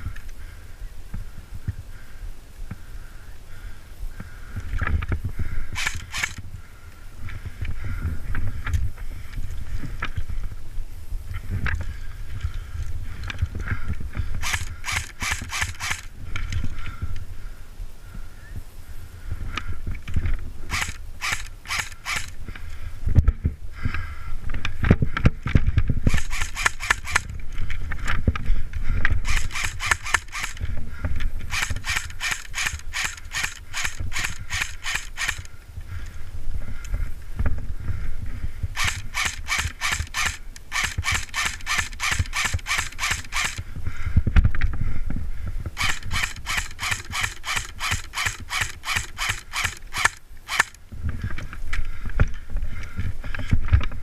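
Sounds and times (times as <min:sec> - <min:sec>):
airsoft rifles firing rapidly: 0:05.8 - 0:06.5, 0:14.4 - 0:16.1, 0:20.7 - 0:22.4, 0:26.0 - 0:27.3, 0:29.2 - 0:30.7, 0:31.5 - 0:35.5, 0:38.8 - 0:43.7, 0:45.8 - 0:50.8.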